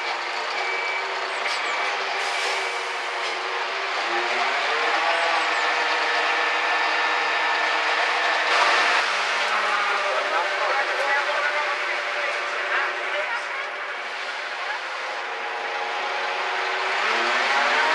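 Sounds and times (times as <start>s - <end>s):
diesel truck engine running: 0.0s - 17.9s.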